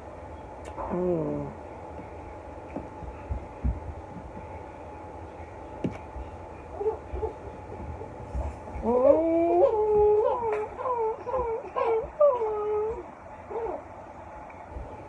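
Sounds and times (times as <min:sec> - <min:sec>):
high wavering whining cry: 0:08.8 - 0:14.0.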